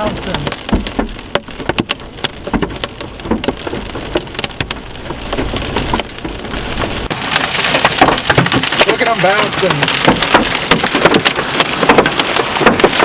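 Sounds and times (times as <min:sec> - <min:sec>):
hailstones hitting car roof: 0:00.0 - 0:13.0
rain hiss: 0:03.6 - 0:13.0.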